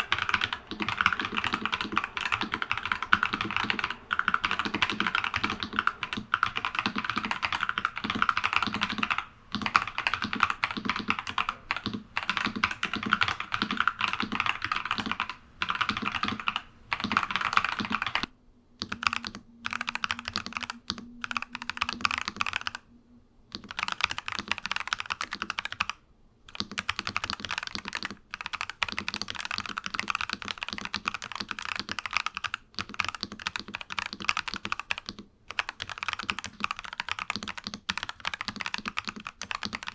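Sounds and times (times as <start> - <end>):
mechanical keyboard typing: 0.0 - 22.8, 23.5 - 39.9.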